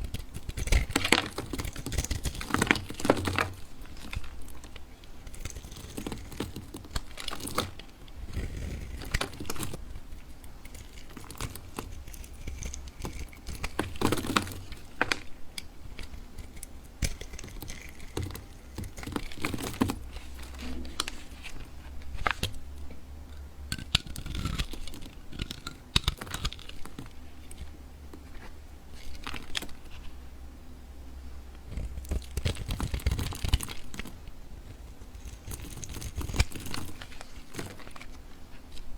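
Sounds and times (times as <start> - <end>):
knife cutting soap: 0.0 - 22.6
low steady hum: 0.0 - 38.9.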